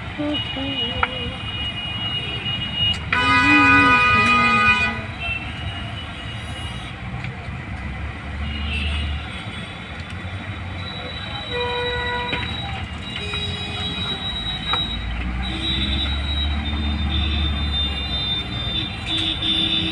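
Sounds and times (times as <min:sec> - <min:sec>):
vehicle horn: 0:00.0 - 0:06.6, 0:08.4 - 0:09.9, 0:15.4 - 0:19.9
passing traffic rumble: 0:00.0 - 0:19.9.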